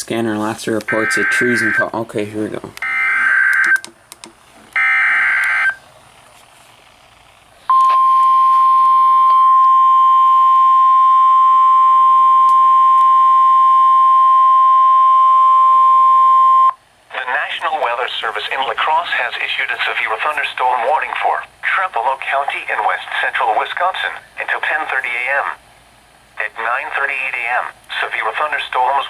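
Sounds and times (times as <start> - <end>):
buzzy digital header burst: 0.9 - 1.9, 2.8 - 3.6
steady alarm tone: 0.9 - 2.0, 2.8 - 3.9, 4.8 - 5.8, 7.7 - 16.8.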